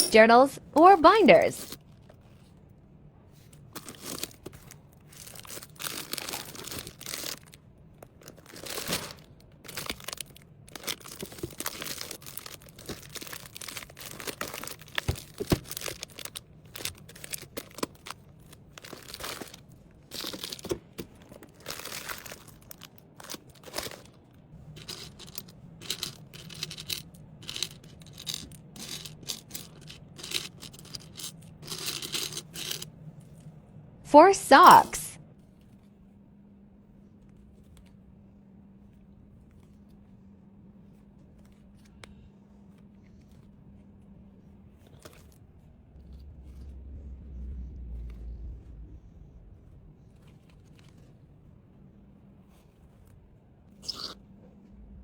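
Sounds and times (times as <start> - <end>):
packaging crinkling and rustling: 3.4 - 32.8.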